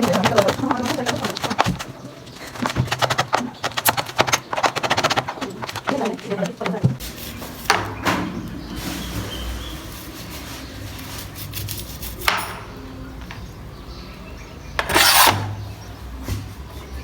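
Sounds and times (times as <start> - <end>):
scraping clatter: 14.8 - 15.6.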